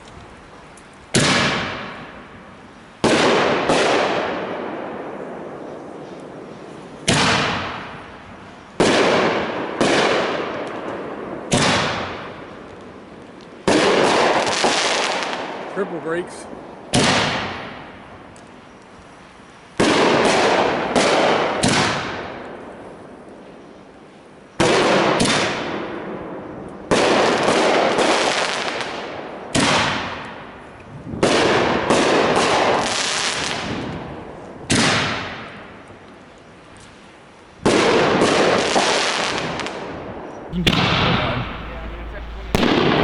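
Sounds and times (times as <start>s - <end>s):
firework shells bursting: 40.5s - 43.0s.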